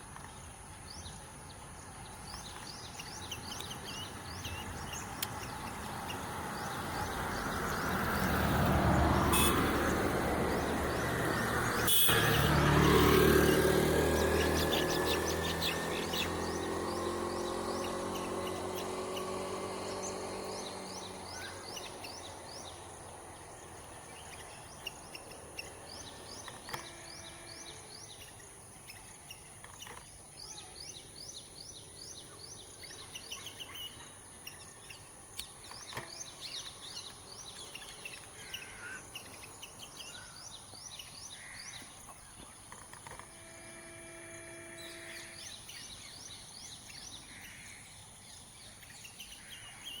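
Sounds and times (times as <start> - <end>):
small birds chirping: 0.0 - 43.4, 44.3 - 50.0
low engine hum: 2.0 - 28.2
high insect buzz: 25.7 - 28.4, 43.1 - 46.1.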